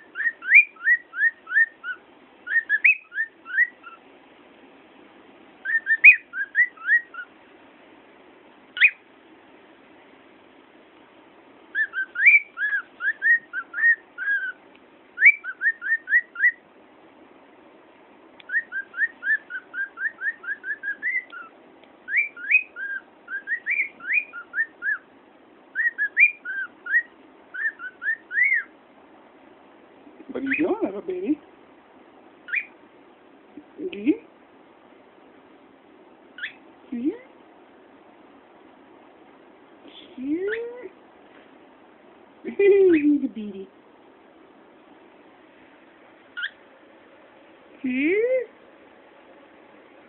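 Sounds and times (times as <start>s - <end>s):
cockatiel whistling: 0.0s - 4.0s, 5.6s - 7.3s, 8.8s - 9.0s, 11.7s - 14.6s, 15.2s - 16.6s, 18.4s - 21.5s, 22.1s - 25.1s, 25.7s - 28.7s, 32.5s - 32.8s, 36.4s - 36.6s, 46.4s - 46.6s.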